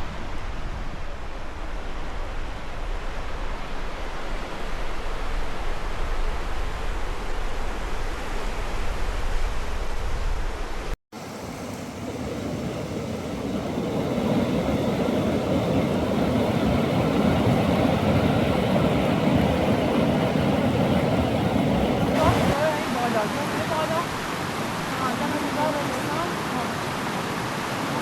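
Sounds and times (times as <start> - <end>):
rushing river water: 0.0 - 28.0.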